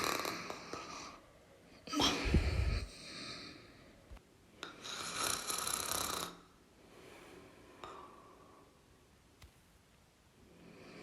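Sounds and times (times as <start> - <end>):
person snoring: 0.0 - 1.2, 4.8 - 6.6.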